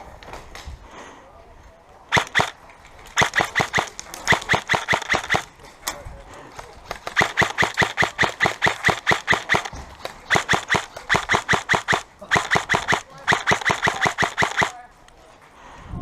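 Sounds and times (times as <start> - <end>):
airsoft gun rapid fire: 2.1 - 5.5, 6.9 - 14.8.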